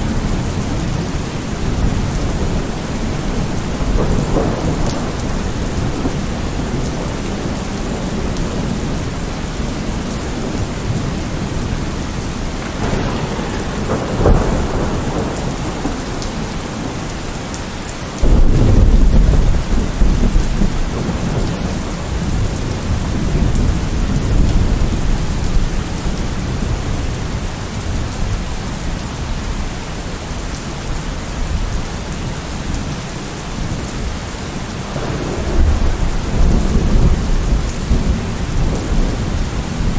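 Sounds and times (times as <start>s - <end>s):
loud thunderclap: 0.0s - 8.8s, 12.6s - 17.2s, 18.2s - 27.0s, 34.9s - 39.9s
rolling thunder: 0.0s - 29.3s, 34.6s - 39.9s
heavy rain: 0.0s - 39.9s.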